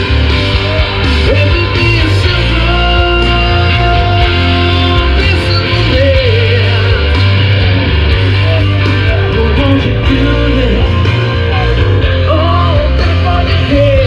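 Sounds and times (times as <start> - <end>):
rock music with singing: 0.0 - 14.0.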